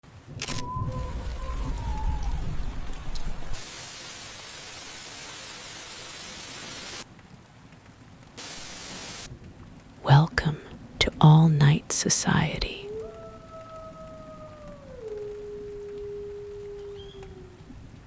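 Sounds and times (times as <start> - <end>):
rain hiss: 0.1 - 18.0
deep rumble: 0.4 - 3.6.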